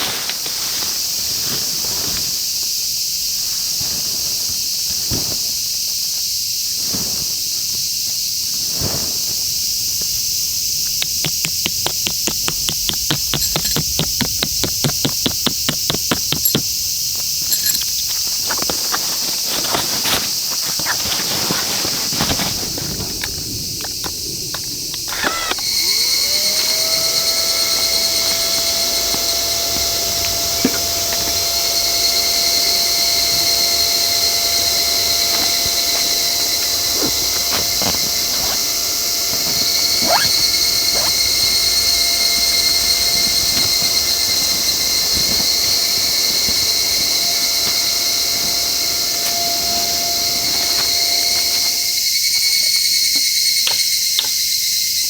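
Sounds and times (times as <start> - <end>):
sharp crackles: 3.4 - 52.0
steam whistling: 8.8 - 19.2, 21.4 - 54.2.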